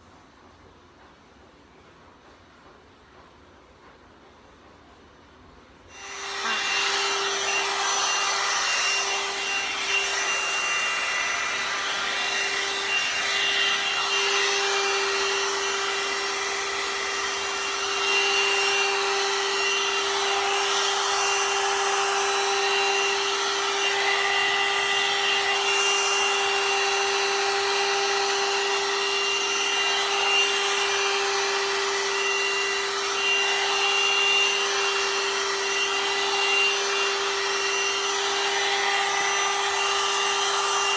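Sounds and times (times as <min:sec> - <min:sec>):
hair dryer fan whine: 0:05.7 - 0:40.9.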